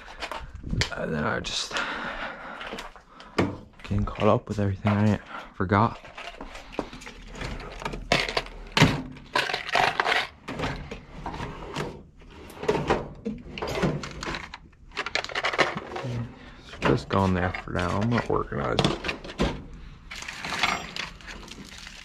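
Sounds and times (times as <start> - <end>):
objects knocking and clattering: 5.9 - 12.0, 12.6 - 22.0.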